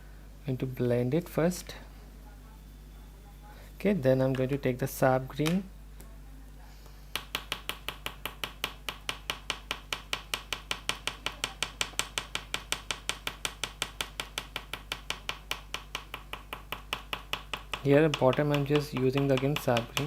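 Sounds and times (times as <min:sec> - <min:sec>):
pastel tapping on paper: 0:07.1 - 0:20.0.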